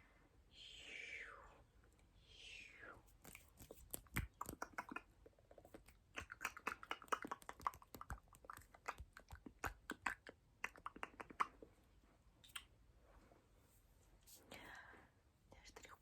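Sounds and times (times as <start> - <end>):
mouth clicks and smacks: 3.1 - 11.8, 12.4 - 12.8.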